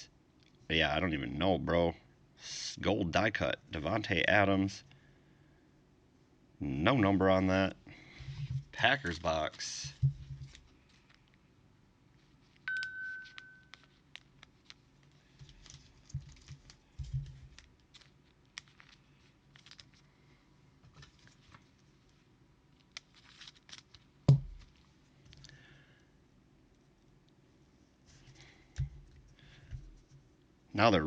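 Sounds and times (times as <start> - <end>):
cards and wrappers rustling: 8.2 - 11.5, 12.1 - 25.7
short ringing tone: 12.7 - 13.8.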